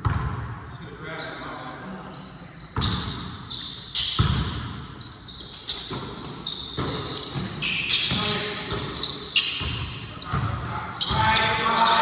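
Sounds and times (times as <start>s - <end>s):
sneakers squeaking: 0.0s - 0.3s, 1.1s - 12.0s
basketball bouncing on court: 0.0s - 0.6s, 2.8s - 3.4s, 4.0s - 4.9s, 5.6s - 12.0s.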